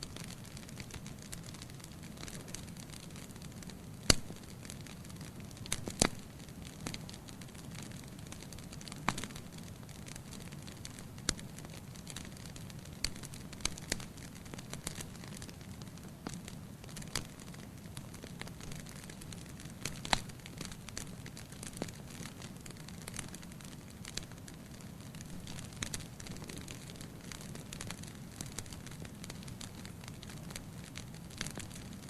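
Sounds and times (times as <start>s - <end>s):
low rumble of flames: 0.0s - 32.0s
wood fire crackling: 0.0s - 32.0s.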